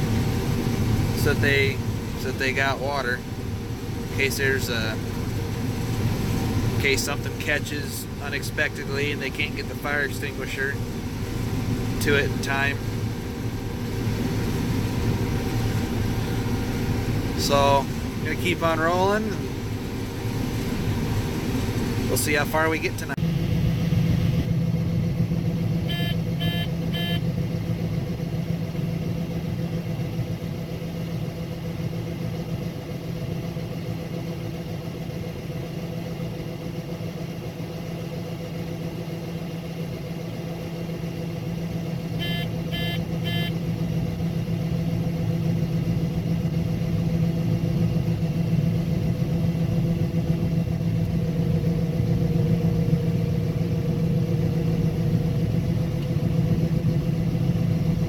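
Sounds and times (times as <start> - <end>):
combine harvester drone: 0.0 - 58.0
short electronic beeps: 25.9 - 27.2, 42.2 - 43.6.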